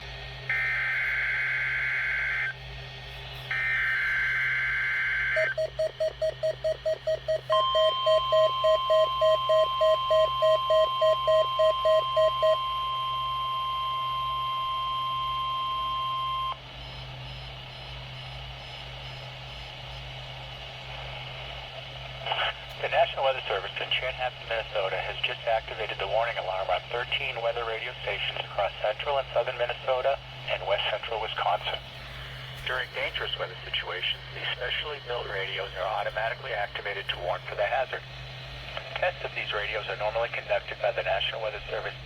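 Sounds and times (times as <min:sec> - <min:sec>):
steady warning alarm tone: 0:00.4 - 0:02.7, 0:03.3 - 0:20.6
pulsing low beep: 0:03.5 - 0:18.0
faint radio hiss: 0:20.4 - 0:42.0.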